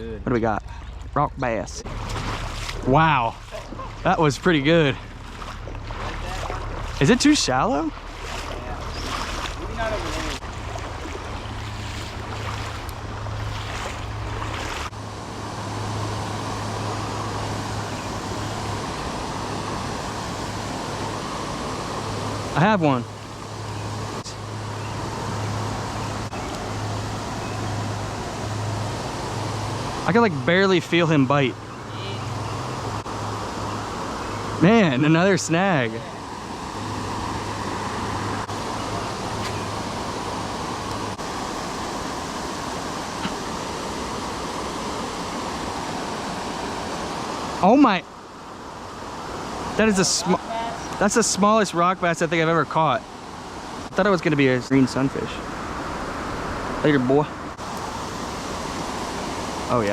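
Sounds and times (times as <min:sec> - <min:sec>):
low hum: 0:00.6 - 0:34.6
creek water rushing: 0:01.8 - 0:59.9.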